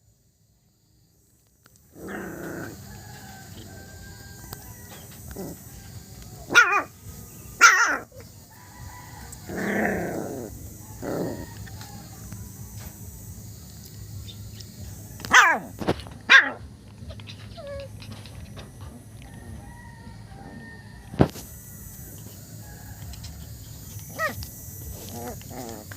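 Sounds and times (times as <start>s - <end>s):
small dog yapping: 6.5s - 6.9s, 7.6s - 8.3s, 15.3s - 18.2s, 24.1s - 24.4s.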